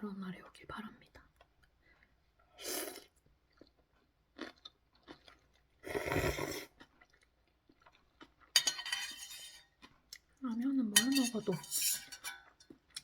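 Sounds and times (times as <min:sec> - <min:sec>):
person chewing noodles: 0:01.3 - 0:08.6, 0:09.5 - 0:10.4, 0:12.4 - 0:13.0.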